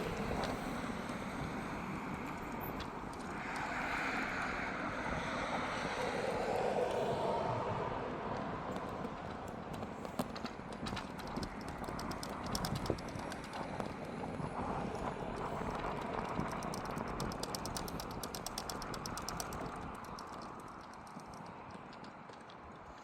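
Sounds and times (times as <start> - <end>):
vehicle tyres on asphalt: 0.0 - 23.0
fast light ticking: 15.4 - 22.1.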